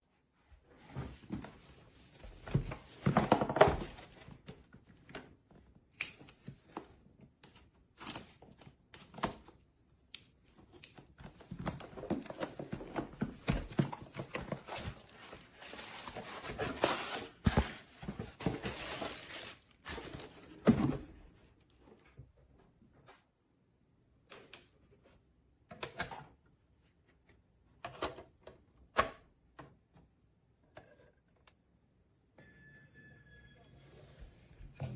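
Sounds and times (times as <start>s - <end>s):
rustling and crinkling: 11.0s - 22.0s.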